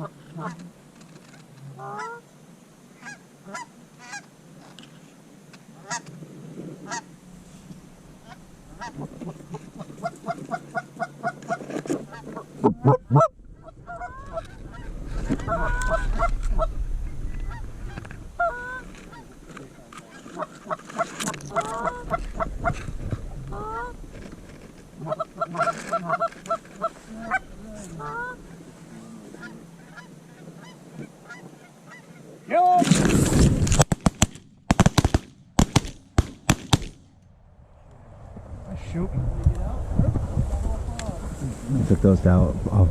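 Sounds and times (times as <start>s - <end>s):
geese honking: 1.8s - 2.2s, 3.0s - 4.3s, 5.8s - 6.1s, 6.8s - 32.5s
low rumble: 7.0s - 31.2s, 37.0s - 42.9s.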